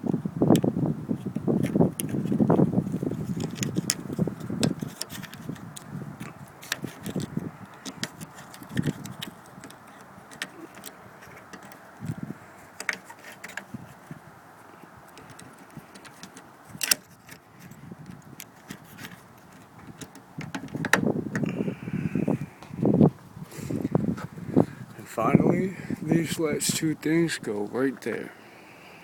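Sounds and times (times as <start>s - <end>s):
plastic clips clicking and rattling: 1.6s - 14.2s, 15.1s - 21.1s.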